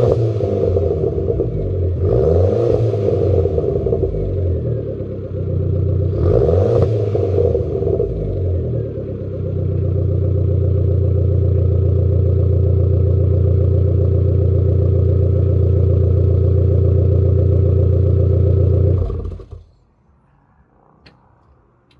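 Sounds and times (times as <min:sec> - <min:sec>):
car engine revving and idling: 0:00.0 - 0:21.9.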